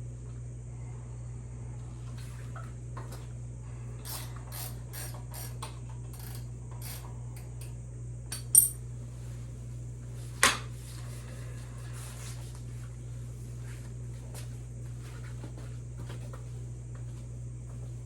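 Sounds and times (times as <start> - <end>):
steady low hum: 0.0 - 18.0
metal tools clicking and scraping: 8.3 - 8.8.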